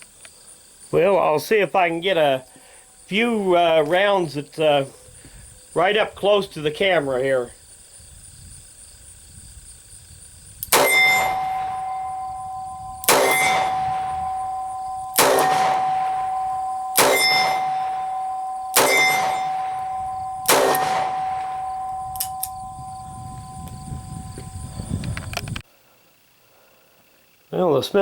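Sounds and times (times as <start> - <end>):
bullets striking steel target: 10.6 - 23.5.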